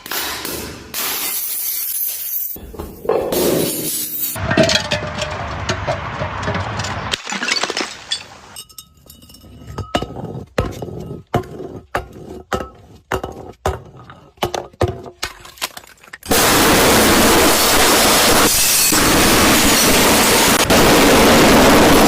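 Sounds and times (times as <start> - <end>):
glass bottle shattering: 1.2 - 5.4, 6.5 - 10.1
glass pieces clinking: 1.4 - 5.4, 6.4 - 10.1.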